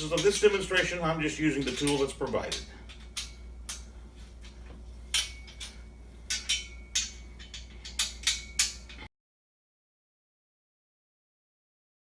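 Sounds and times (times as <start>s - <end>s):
metal clicks and clinks: 0.0s - 3.9s, 5.1s - 9.1s.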